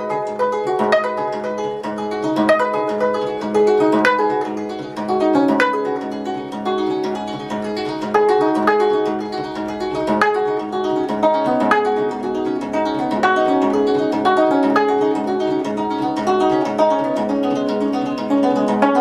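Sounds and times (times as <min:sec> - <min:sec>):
plucked zither notes: 0:00.0 - 0:19.0.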